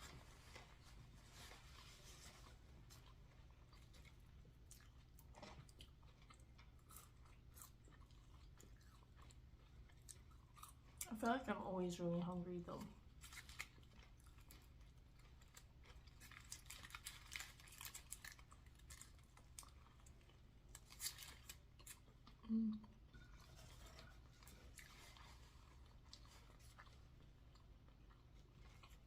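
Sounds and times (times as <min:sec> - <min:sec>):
chewing and crunching food: 0:00.0 - 0:29.0.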